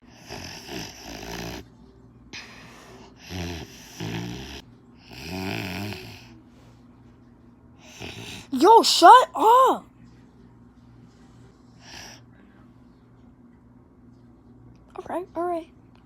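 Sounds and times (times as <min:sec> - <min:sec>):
person snoring: 0:00.1 - 0:01.6, 0:02.8 - 0:06.3.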